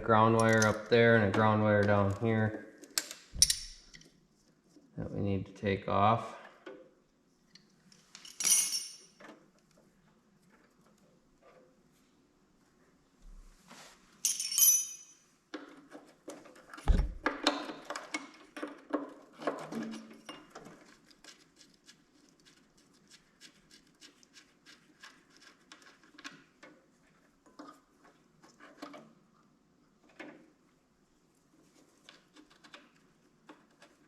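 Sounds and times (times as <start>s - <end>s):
hand tools clinking on metal: 0.4s - 0.9s, 8.2s - 9.2s, 14.2s - 15.2s
dull knock: 16.9s - 17.3s.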